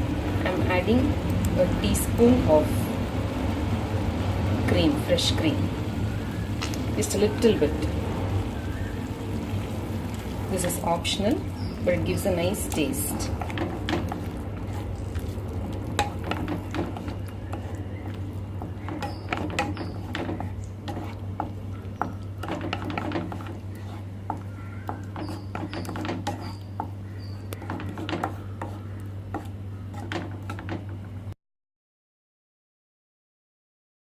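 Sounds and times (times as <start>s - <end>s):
steady low hum: 0.0s - 31.4s
spoon scraping a pan: 11.6s - 30.9s.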